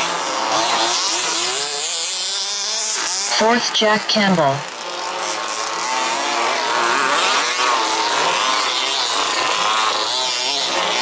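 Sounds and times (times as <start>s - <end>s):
rc buggy engines revving: 0.0s - 11.0s.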